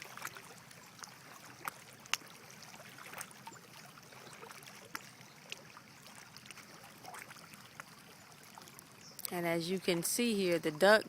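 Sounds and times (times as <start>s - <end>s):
sharp clicks and splashes: 0.0s - 10.0s
lake water lapping: 0.0s - 11.0s.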